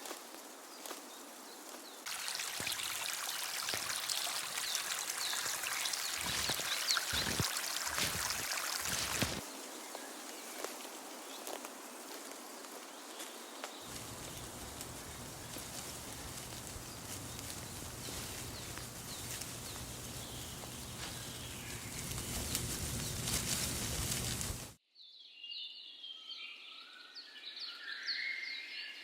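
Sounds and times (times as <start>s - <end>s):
steady background hiss: 9.2s - 24.8s.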